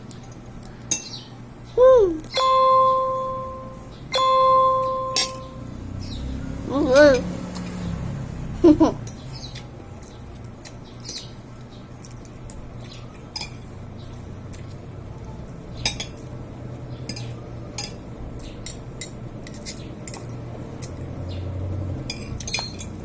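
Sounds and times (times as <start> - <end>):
low steady hum: 0.0 - 23.0
utensils clinking on dishware: 0.1 - 1.2, 2.3 - 5.7, 9.0 - 13.8, 15.8 - 16.4, 17.1 - 21.4, 22.0 - 23.0.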